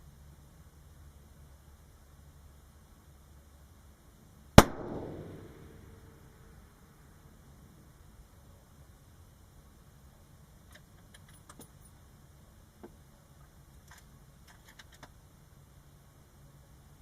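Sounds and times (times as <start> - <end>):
low steady rumble: 0.0 - 17.0
small metallic jingles: 10.8 - 12.1.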